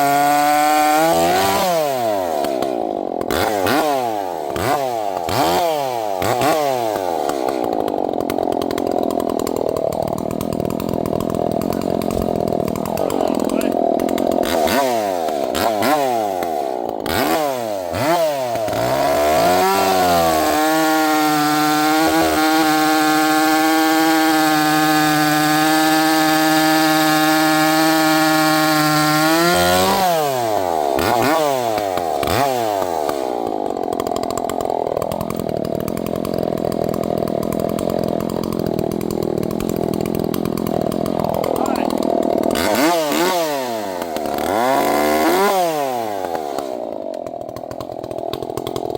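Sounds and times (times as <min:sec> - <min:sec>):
chainsaw revving and cutting wood: 0:00.0 - 0:48.9.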